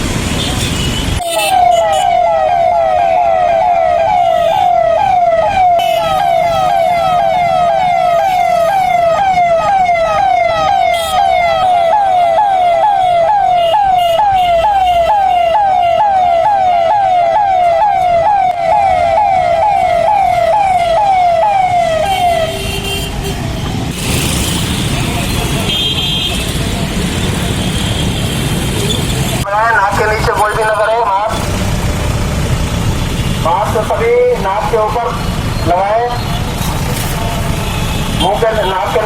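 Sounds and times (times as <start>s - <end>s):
siren in rapid falling sweeps: 1.5s - 22.5s.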